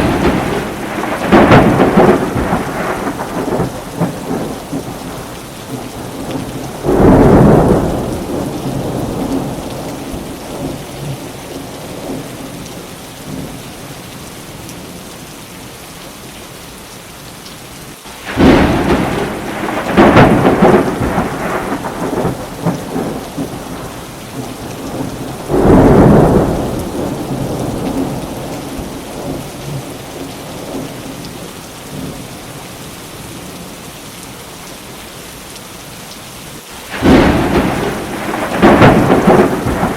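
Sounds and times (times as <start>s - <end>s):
thunder claps and rumble: 0.0s - 12.7s, 18.2s - 32.2s, 36.9s - 39.9s
steady rain: 0.0s - 39.9s.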